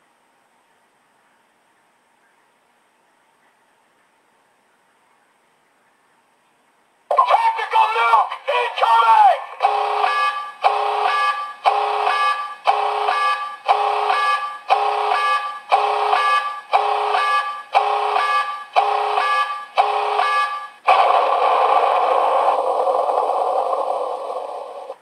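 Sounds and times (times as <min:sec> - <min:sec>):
continuous buzzing tone: 0:00.0 - 0:25.0
electronic alarm beeping: 0:09.6 - 0:20.9.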